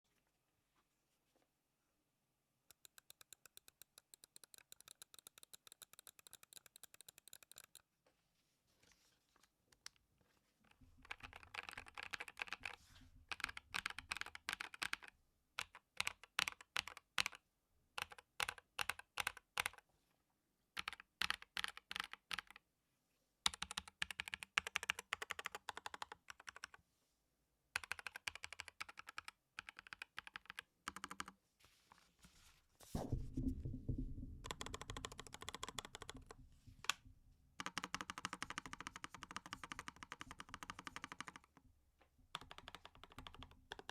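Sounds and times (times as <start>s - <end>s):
mechanical keyboard typing: 2.7s - 7.8s, 11.0s - 17.4s, 18.0s - 19.8s, 20.8s - 22.6s, 23.5s - 26.8s, 27.8s - 31.4s, 34.4s - 36.3s, 37.6s - 41.6s, 42.4s - 43.9s.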